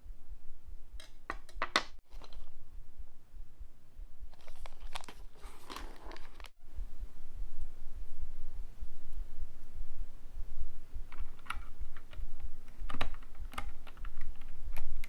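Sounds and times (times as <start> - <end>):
packaging crinkling and rustling: 4.3 - 6.6.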